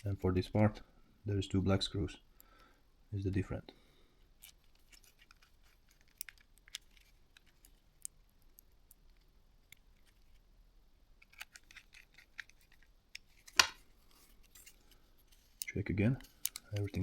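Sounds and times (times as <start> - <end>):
small clicks and taps of parts: 4.2 - 10.4, 11.2 - 17.0.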